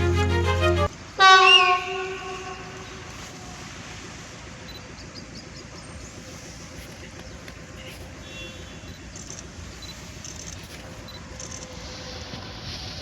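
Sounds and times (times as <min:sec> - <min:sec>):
train horn blast: 0:00.0 - 0:02.8
low rumble background noise: 0:02.1 - 0:13.0.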